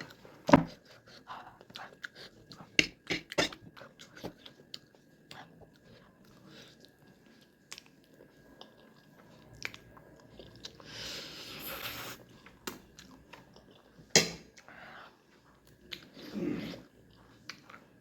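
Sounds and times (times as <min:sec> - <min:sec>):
chewing and biting: 0:00.0 - 0:10.8, 0:12.2 - 0:14.7.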